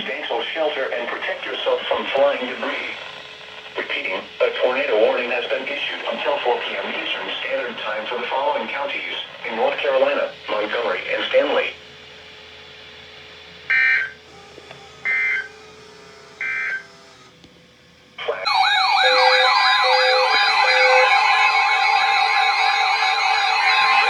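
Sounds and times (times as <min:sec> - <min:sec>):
sweeping siren-like alarm tones: 0:13.7 - 0:14.2, 0:15.0 - 0:15.5, 0:16.4 - 0:16.8, 0:18.4 - 0:24.0
digital data bursts: 0:18.4 - 0:24.0.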